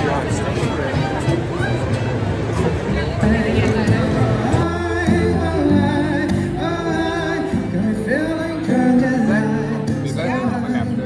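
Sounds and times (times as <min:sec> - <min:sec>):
person singing with vibrato: 0:03.3 - 0:11.0.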